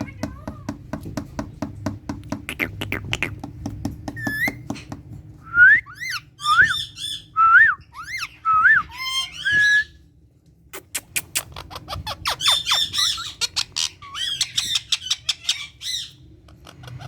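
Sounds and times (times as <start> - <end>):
parakeet whistles: 5.5 - 10.0.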